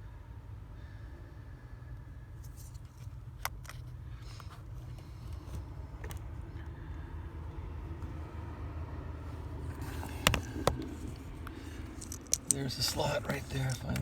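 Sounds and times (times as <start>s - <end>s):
sharp clicks of handling: 9.8s - 14.0s.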